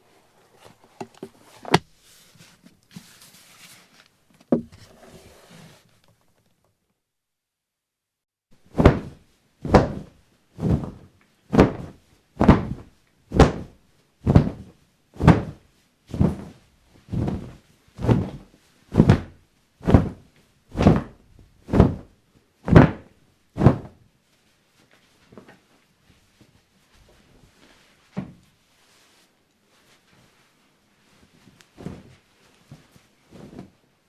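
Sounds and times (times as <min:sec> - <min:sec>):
footsteps on a hard surface: 0:00.6 - 0:05.2.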